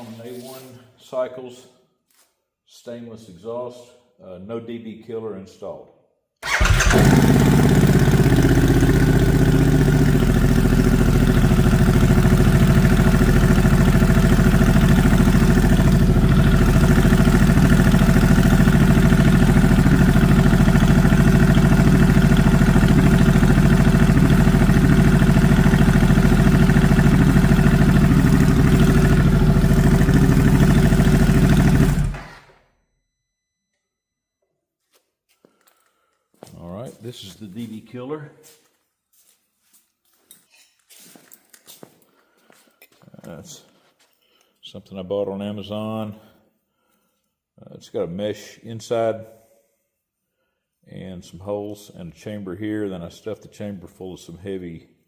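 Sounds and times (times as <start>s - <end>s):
motorcycle engine idling: 6.4s - 32.4s.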